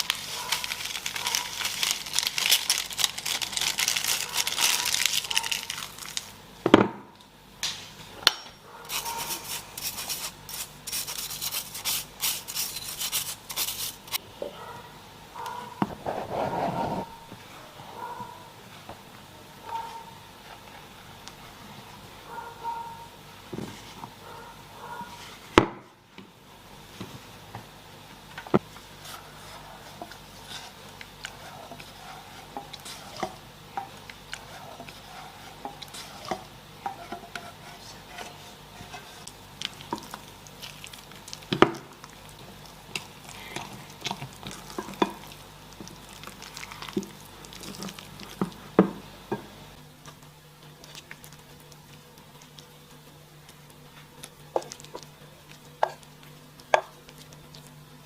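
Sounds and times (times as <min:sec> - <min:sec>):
utensil scraping in a bowl: 0:08.9 - 0:14.2, 0:15.9 - 0:17.3, 0:29.0 - 0:41.1.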